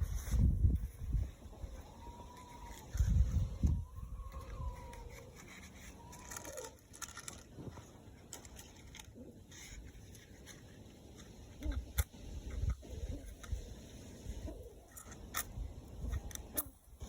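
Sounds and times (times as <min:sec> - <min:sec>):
dry fuel crunching and crackling: 0:02.3 - 0:13.7.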